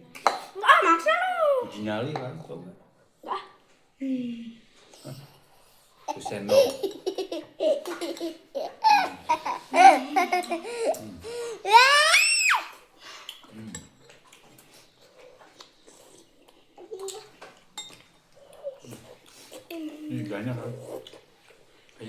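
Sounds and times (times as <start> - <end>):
people laughing: 6.1 - 11.9
child squealing laugh: 11.6 - 12.8.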